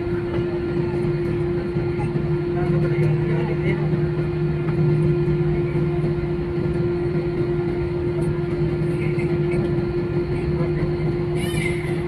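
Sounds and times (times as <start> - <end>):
airliner engines droning: 0.0 - 12.0.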